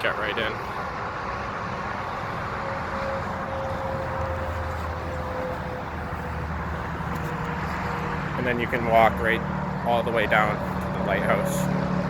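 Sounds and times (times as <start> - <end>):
highway traffic noise: 0.0 - 12.0.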